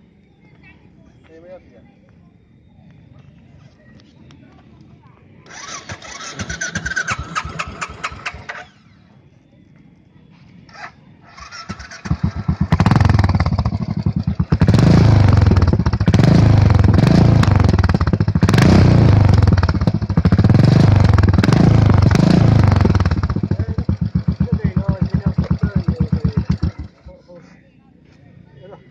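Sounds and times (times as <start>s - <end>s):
motorcycle engine idling and revving: 5.4s - 9.8s, 10.6s - 27.4s.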